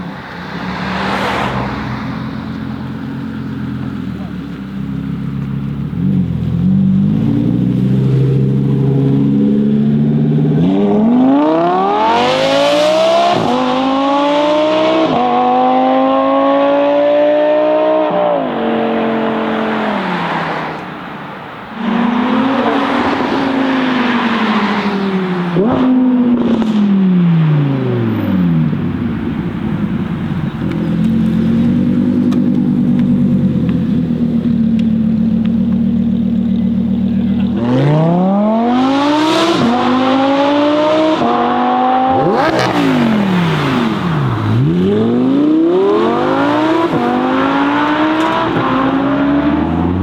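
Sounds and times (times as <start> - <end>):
engine low rumble: 0.0 - 11.0, 24.3 - 38.4
sports car engine accelerating: 0.4 - 21.0, 21.7 - 50.0.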